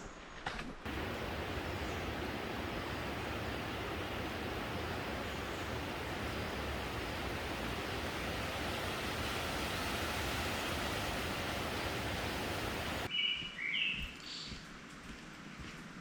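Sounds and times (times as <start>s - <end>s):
bird chirping: 0.9s - 9.4s
wind rushing: 0.9s - 13.1s.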